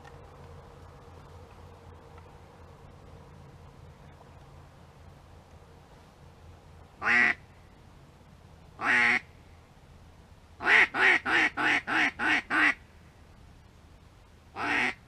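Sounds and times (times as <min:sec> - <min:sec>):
duck quacking: 0:07.0 - 0:07.4, 0:08.8 - 0:09.2, 0:10.6 - 0:12.8, 0:14.6 - 0:15.0.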